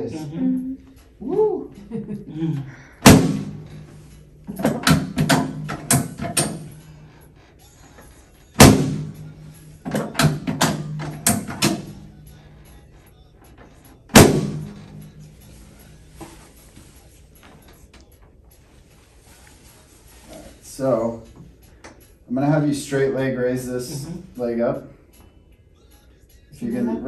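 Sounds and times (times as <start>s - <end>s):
heavy thuds of treatment table: 3.0s - 6.8s, 8.6s - 12.0s, 14.2s - 15.3s.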